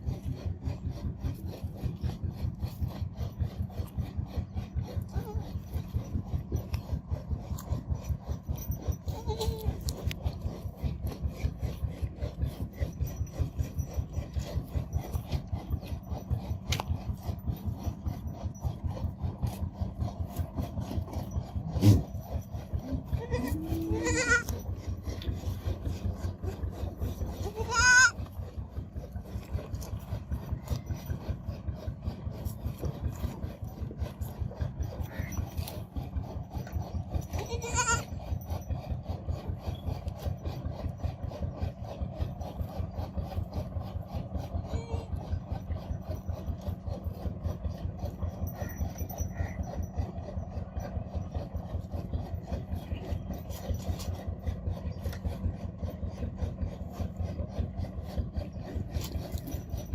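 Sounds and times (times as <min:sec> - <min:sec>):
goat kid bleating: 0:09.0 - 0:10.1, 0:23.0 - 0:24.6, 0:27.4 - 0:28.2, 0:37.3 - 0:38.1.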